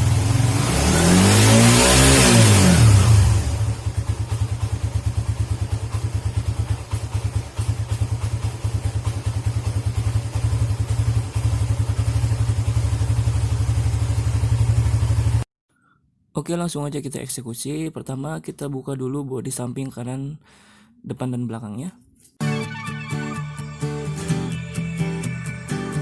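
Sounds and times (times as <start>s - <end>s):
motorcycle engine idling unevenly: 3.6s - 15.4s.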